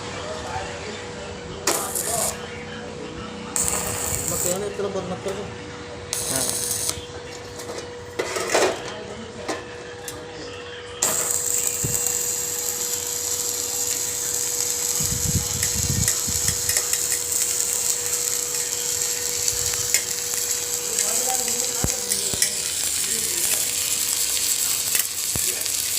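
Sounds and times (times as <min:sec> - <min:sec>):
steady hum: 0:00.0 - 0:25.9
welding arc crackling and hissing: 0:01.7 - 0:02.6, 0:03.6 - 0:05.0, 0:06.1 - 0:07.6, 0:11.0 - 0:25.9.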